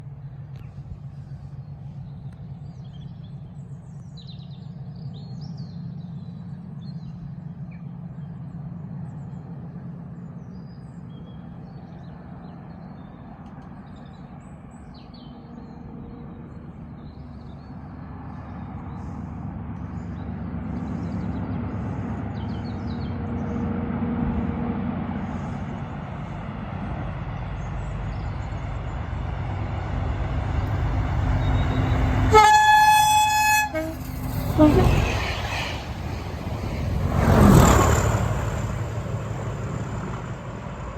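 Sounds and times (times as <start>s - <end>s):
locomotive diesel engines droning: 0.0s - 40.9s
birds chirping: 25.8s - 40.8s.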